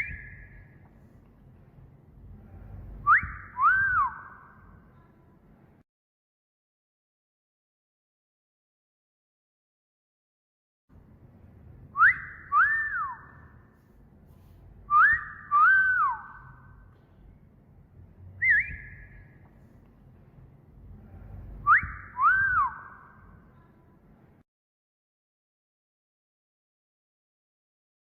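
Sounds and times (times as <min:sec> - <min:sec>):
wolf whistle: 0:00.0 - 0:00.6, 0:03.0 - 0:04.6, 0:12.0 - 0:13.5, 0:14.9 - 0:16.8, 0:18.4 - 0:19.3, 0:21.6 - 0:23.2.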